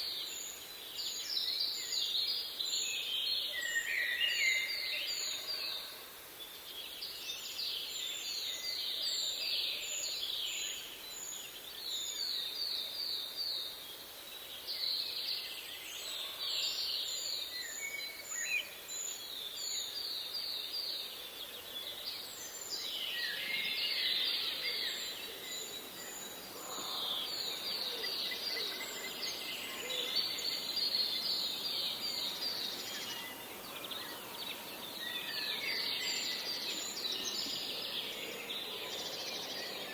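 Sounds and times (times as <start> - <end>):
birds singing: 14.6 - 39.9.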